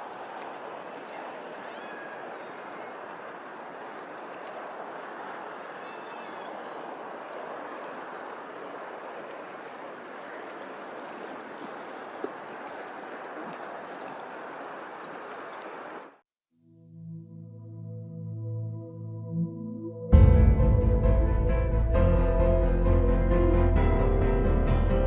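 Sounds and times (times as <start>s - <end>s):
rushing water: 0.0s - 16.2s.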